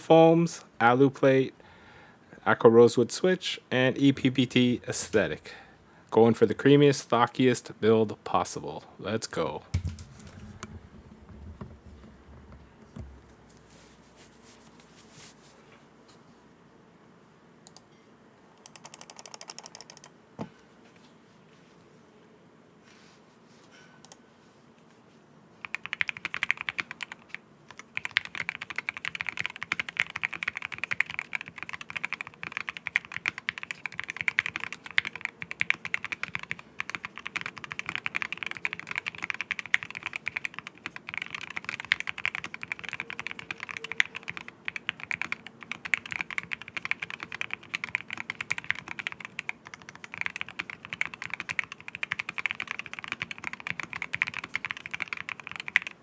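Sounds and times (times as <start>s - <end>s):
mechanical keyboard typing: 18.6s - 20.1s, 25.6s - 56.0s.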